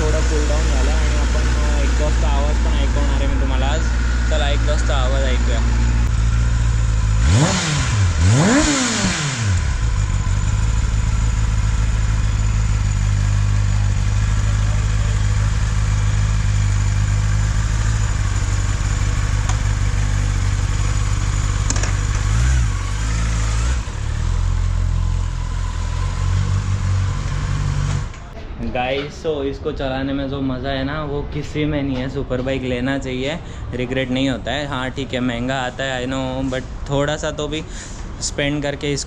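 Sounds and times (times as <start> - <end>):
motorcycle engine revving and idling: 0.0 - 28.4.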